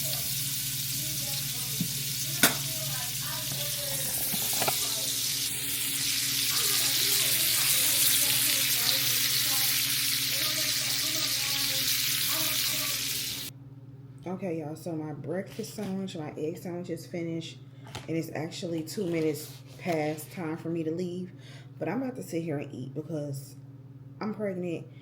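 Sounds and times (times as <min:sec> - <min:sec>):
egg sizzling in a pan: 0:00.0 - 0:13.5
sharp tap on pan: 0:01.8 - 0:02.7.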